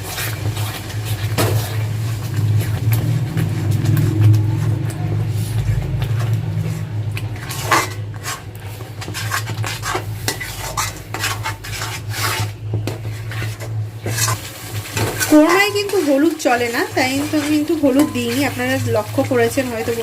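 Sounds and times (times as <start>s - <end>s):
spatula scraping a pan: 0.0s - 20.0s
steady low hum: 1.3s - 14.5s.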